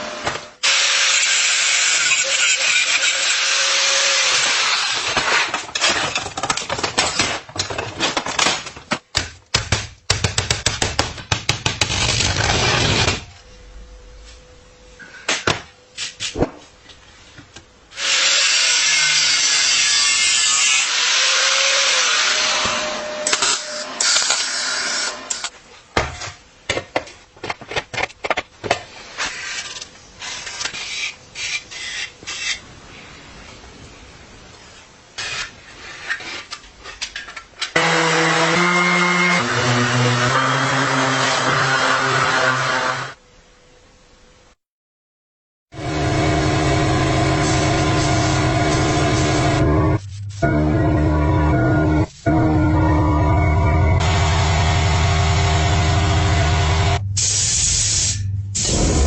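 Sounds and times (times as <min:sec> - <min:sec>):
power tool running: 0:37.8 - 0:43.2, 0:53.9 - 0:57.0.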